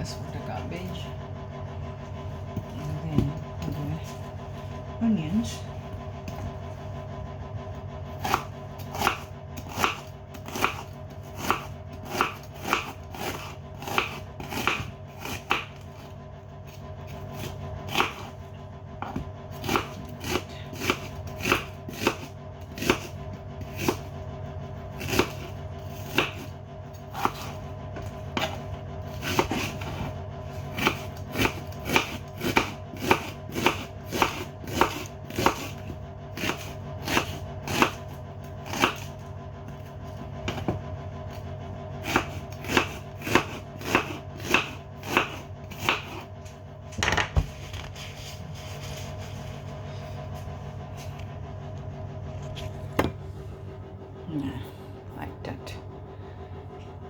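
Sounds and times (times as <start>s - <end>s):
knife chopping onions on board: 8.1s - 16.1s, 16.7s - 18.4s, 19.0s - 24.1s, 24.8s - 40.8s, 42.0s - 46.3s.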